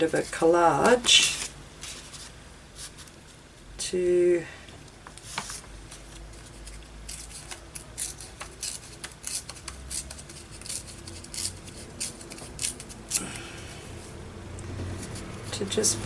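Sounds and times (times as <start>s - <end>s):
scissors snipping paper: 6.6s - 13.4s.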